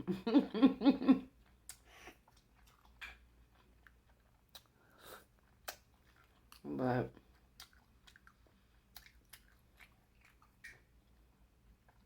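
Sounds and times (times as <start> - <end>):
chewing smacks: 1.3 - 12.0
wet mouth clicks: 1.6 - 3.3, 4.5 - 6.7, 7.5 - 11.0.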